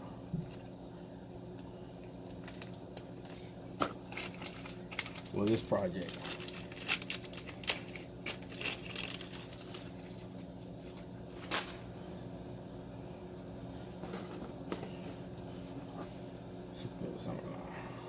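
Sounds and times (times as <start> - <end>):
steady low hum: 0.0 - 18.0
cable ties clicking and rustling: 2.3 - 10.2.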